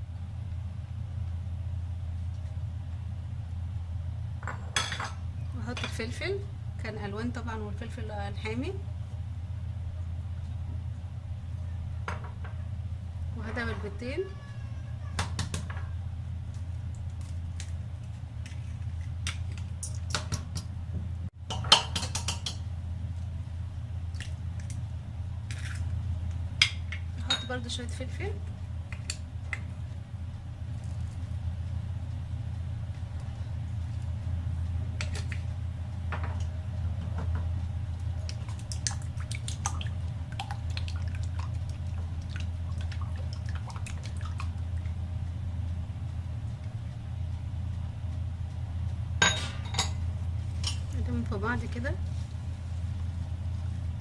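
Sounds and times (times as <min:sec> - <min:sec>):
steady low hum: 0:00.0 - 0:54.0
utensil stirring wet mixture: 0:38.2 - 0:45.0.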